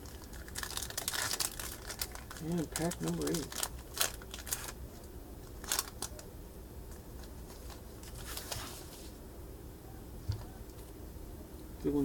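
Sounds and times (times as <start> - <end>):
wrapper tearing and crinkling: 0.0 - 4.8, 5.4 - 6.2.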